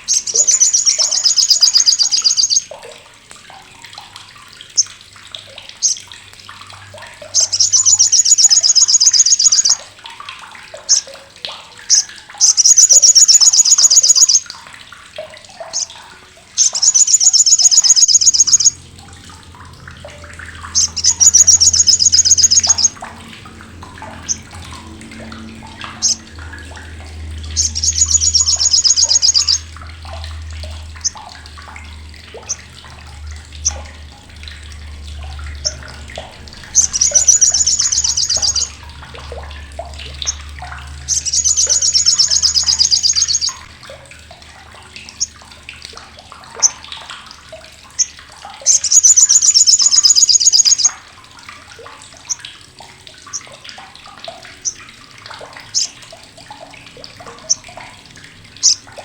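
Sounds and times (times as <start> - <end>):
bird rattling calls: 0.0 - 2.6, 7.4 - 9.8, 11.9 - 14.4, 16.6 - 18.8, 20.7 - 22.9, 27.6 - 29.6, 36.7 - 38.8, 41.1 - 43.6, 48.7 - 50.9.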